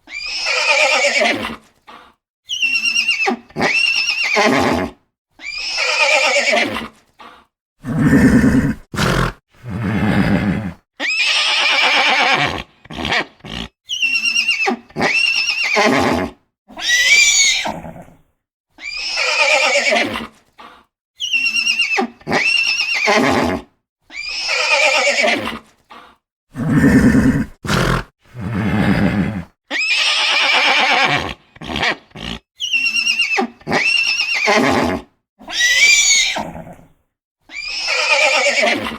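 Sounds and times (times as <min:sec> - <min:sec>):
horses whinnying: 0:00.1 - 0:01.7, 0:02.5 - 0:07.0, 0:07.9 - 0:18.2, 0:18.8 - 0:20.3, 0:21.2 - 0:25.6, 0:26.6 - 0:36.9, 0:37.5 - 0:38.9
deeper horse calls: 0:07.9 - 0:16.3, 0:26.6 - 0:35.0.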